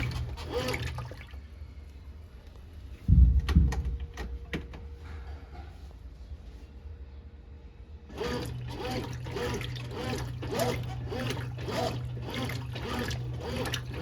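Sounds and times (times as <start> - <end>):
water swishing in washing machine: 0.0 - 1.5, 8.1 - 14.0.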